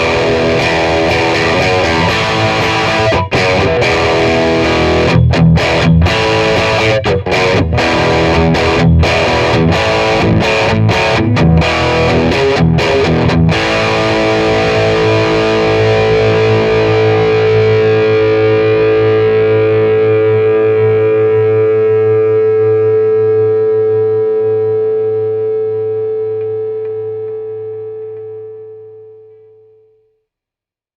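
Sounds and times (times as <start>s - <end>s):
distorted electric guitar chords: 0.0s - 30.0s.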